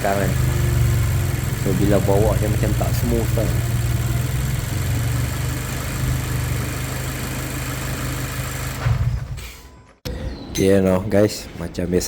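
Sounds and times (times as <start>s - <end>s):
car engine idling: 0.0s - 9.0s
thump: 8.8s - 9.5s.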